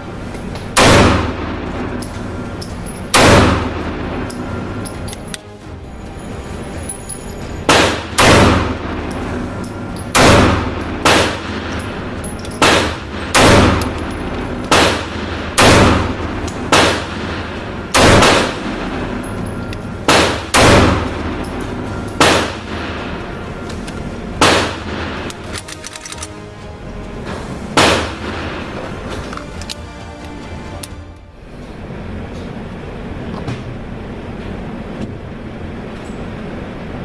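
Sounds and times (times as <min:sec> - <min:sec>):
steady background noise: 0:00.0 - 0:37.0
loud gunshots echoing: 0:00.7 - 0:02.0, 0:03.1 - 0:04.5, 0:07.7 - 0:09.5, 0:10.1 - 0:23.2, 0:24.4 - 0:26.3, 0:27.8 - 0:28.9.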